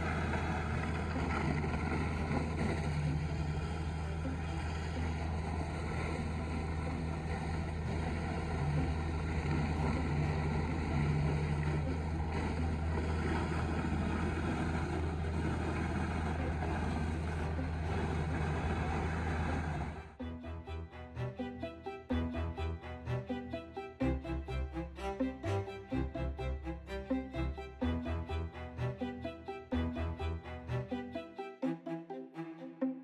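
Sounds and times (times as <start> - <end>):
music: 0.0 - 19.4, 20.0 - 33.0
large engine humming: 0.0 - 31.3.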